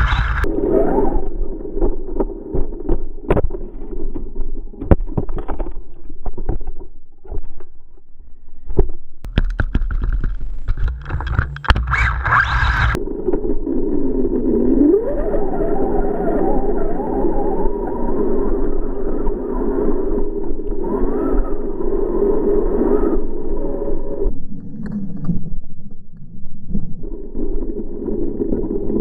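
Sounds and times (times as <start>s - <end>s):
electric motor whine: 11.2s - 13.0s.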